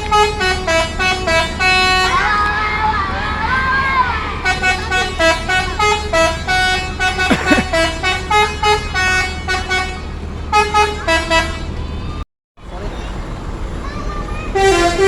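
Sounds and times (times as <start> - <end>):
multi-tone air horn melody: 0.0 - 2.2, 4.4 - 11.8, 14.6 - 15.0
low engine hum: 0.0 - 15.0.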